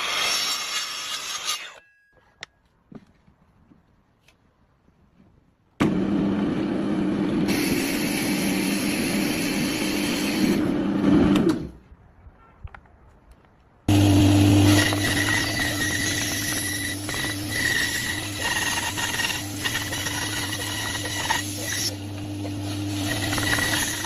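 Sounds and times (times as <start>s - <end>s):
wood lathe cutting wood: 13.9s - 24.0s.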